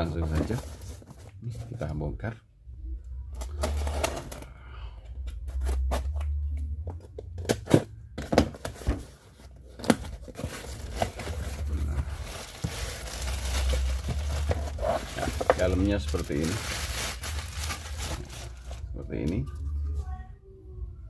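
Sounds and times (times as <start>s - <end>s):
cardboard rustling: 0.1s - 1.7s, 8.5s - 18.8s.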